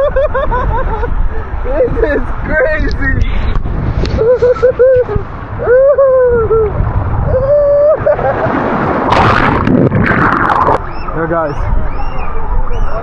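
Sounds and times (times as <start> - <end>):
riders whooping: 4.1 - 9.2
rush of splashing water: 6.8 - 11.0.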